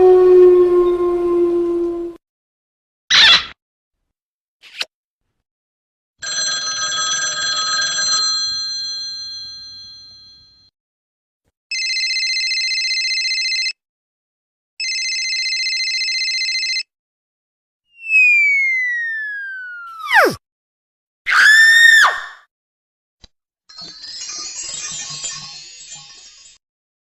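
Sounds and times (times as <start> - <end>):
telephone bell ringing: 6.2 - 10.7, 11.7 - 13.8, 14.8 - 16.9.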